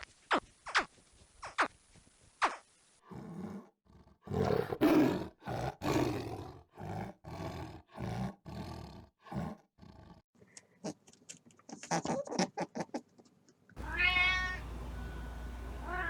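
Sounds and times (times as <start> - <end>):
lion roaring and grunting: 4.3 - 10.2.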